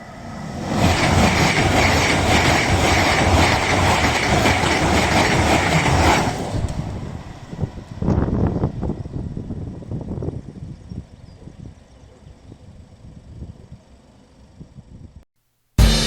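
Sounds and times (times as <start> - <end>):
high-speed train passing: 0.0 - 11.8
wheels clattering over rails: 0.6 - 8.1.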